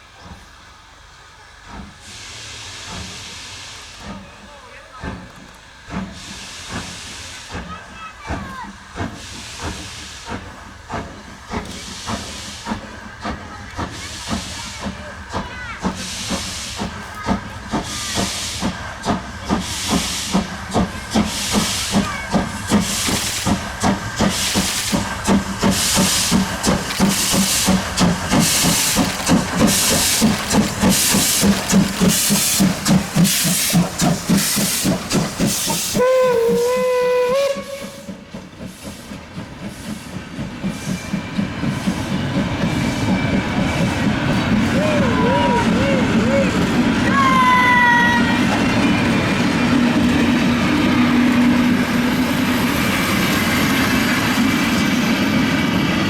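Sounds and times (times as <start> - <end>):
steam locomotive exhaust chuffs: 0.0 - 56.0
steam whistle: 36.0 - 38.2.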